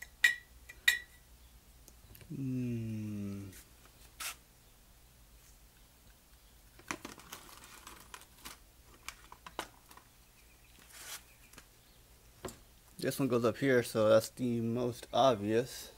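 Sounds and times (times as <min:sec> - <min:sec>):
short rustle: 0:10.8 - 0:11.4.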